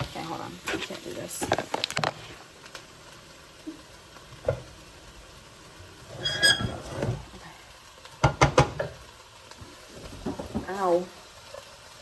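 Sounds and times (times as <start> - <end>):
faint sizzle: 0.0 - 12.0
utensil scraping a frying pan: 6.0 - 7.4
squeaky scrape: 6.1 - 7.2.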